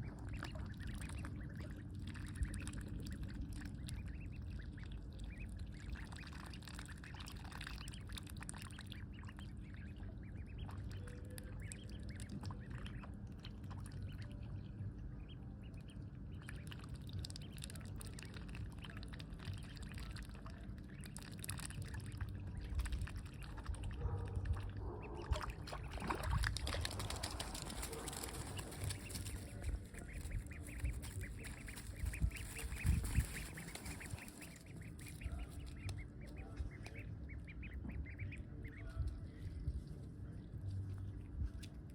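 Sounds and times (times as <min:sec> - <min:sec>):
steady low rumble: 0:00.0 - 0:41.9
ducks quacking: 0:23.3 - 0:39.1.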